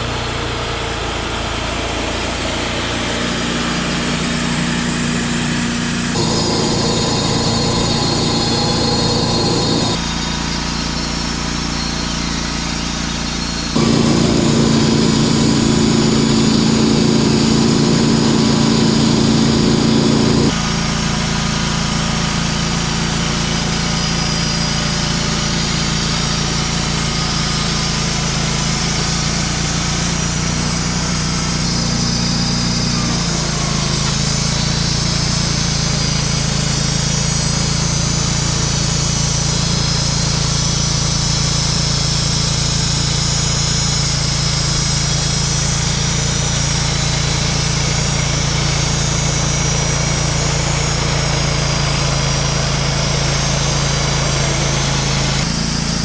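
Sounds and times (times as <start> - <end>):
portable sawmill running: 6.1 - 10.0, 13.8 - 20.6.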